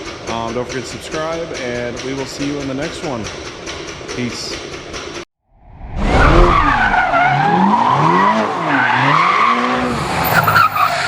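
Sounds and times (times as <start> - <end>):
car engine revving: 5.8 - 11.0
tires squealing: 6.0 - 11.0.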